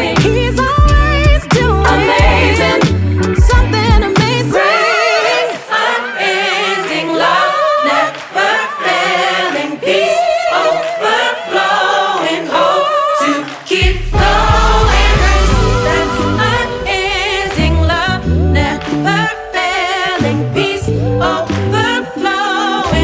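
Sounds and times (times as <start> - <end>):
bass and drums: 0.0 - 4.5, 13.8 - 19.3
voices singing gospel with vibrato: 0.0 - 23.0.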